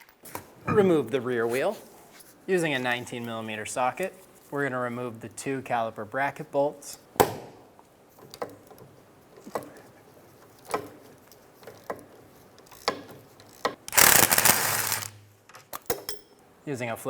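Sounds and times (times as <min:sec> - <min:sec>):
ratchet clicking: 0:12.6 - 0:15.2
ratchet rattling burst: 0:13.5 - 0:15.2.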